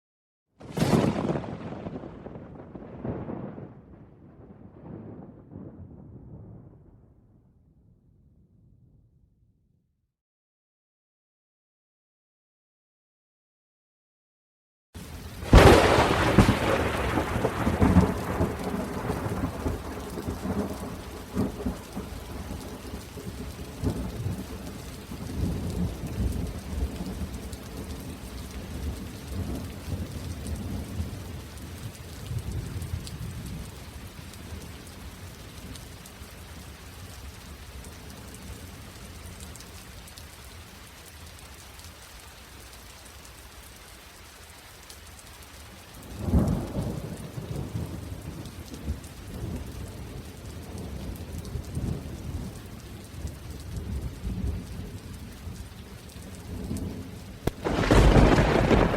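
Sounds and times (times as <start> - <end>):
rain falling: 0.6 - 5.8, 15.0 - 58.9
thunder rumbling: 0.6 - 9.2, 15.4 - 35.0, 46.0 - 52.6, 56.5 - 58.9.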